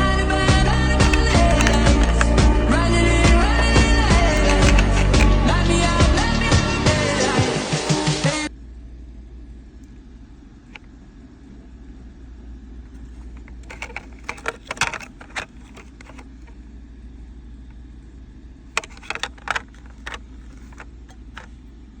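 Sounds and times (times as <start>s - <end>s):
clicks and rattles: 0.7s - 5.5s, 13.0s - 16.5s, 18.8s - 21.6s.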